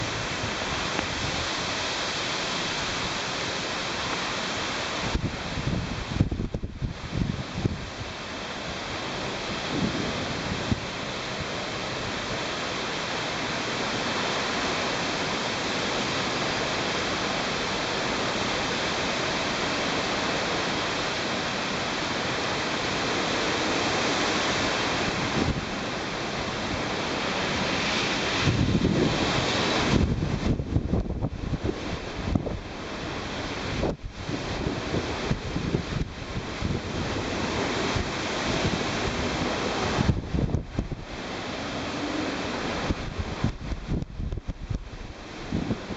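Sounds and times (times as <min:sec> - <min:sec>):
heavy surf breaking on shore: 0:00.0 - 0:45.9
wind buffeting microphone: 0:05.0 - 0:08.2, 0:09.5 - 0:11.2, 0:28.3 - 0:45.9.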